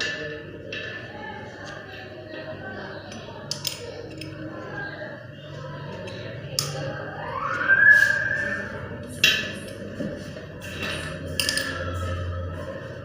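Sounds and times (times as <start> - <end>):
rising gliding tone: 7.2 - 8.8.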